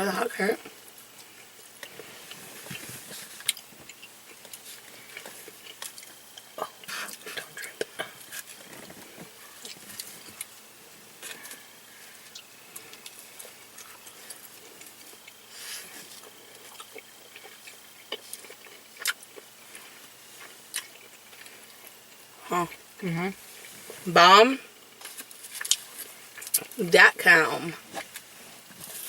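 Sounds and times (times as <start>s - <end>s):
chewing with wet mouth clicks: 1.2s - 8.9s, 12.2s - 22.0s, 25.0s - 26.8s.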